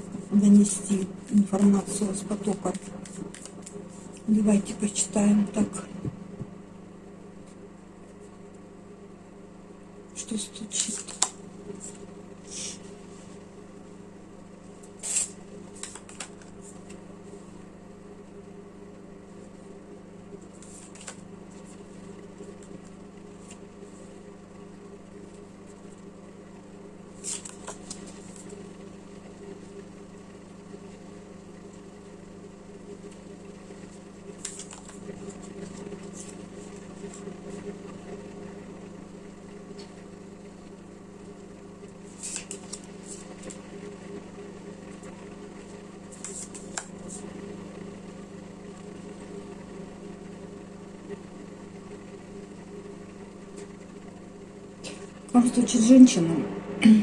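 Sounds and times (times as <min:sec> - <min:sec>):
cards rustling and clicking: 0:02.5 - 0:04.3, 0:10.6 - 0:12.0, 0:14.8 - 0:17.0, 0:20.4 - 0:21.9, 0:27.2 - 0:28.5, 0:34.4 - 0:37.2, 0:42.1 - 0:43.6, 0:46.1 - 0:47.2
low hum: 0:54.8 - 0:57.0.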